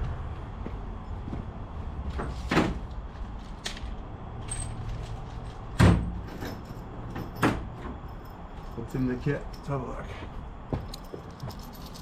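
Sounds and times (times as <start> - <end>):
tools clunking and knocking: 4.4 - 8.7.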